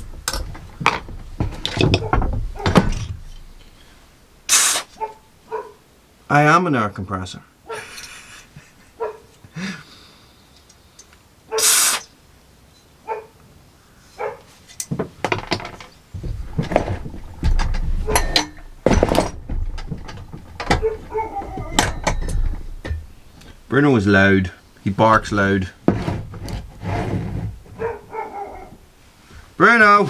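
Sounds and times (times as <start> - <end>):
metal clicks and clatter: 0.0 - 3.8, 15.3 - 23.7.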